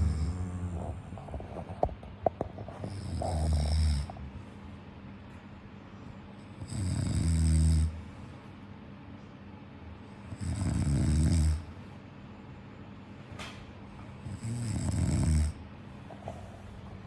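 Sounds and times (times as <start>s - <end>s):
person snoring: 0.0s - 1.2s, 2.8s - 4.2s, 10.3s - 11.7s, 14.2s - 15.6s
quiet breathing: 0.0s - 4.9s.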